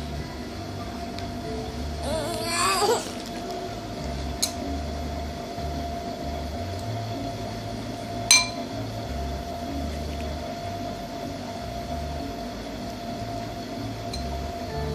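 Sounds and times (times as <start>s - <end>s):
steady low hum: 0.0s - 14.9s
rising wavering voice: 1.7s - 3.3s
spoon clinking against a dish: 8.3s - 8.6s.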